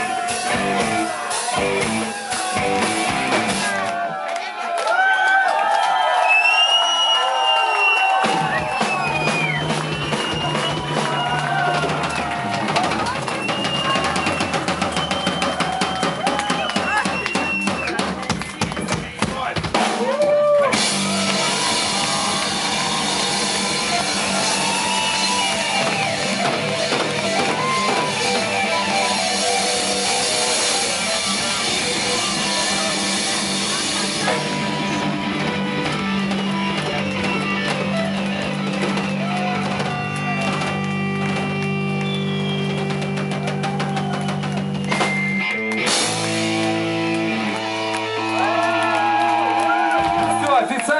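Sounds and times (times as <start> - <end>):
electric guitar: 0.0 - 4.0, 20.2 - 50.4
bass guitar: 0.0 - 4.1, 8.2 - 50.4
drum kit: 0.0 - 4.1, 7.8 - 50.7.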